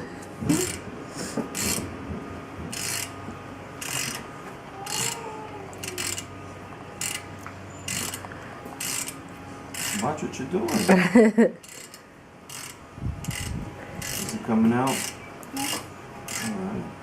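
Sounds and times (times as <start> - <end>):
ratcheting hand tool clicking: 7.9 - 10.1, 11.6 - 16.6.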